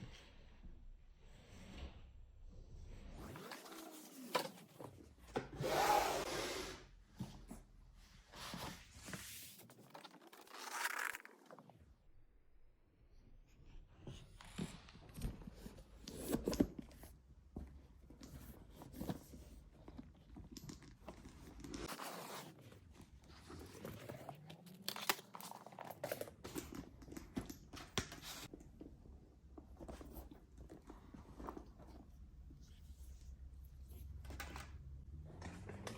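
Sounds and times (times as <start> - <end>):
paper crinkling and rustling: 9.0 - 11.7, 21.8 - 26.6.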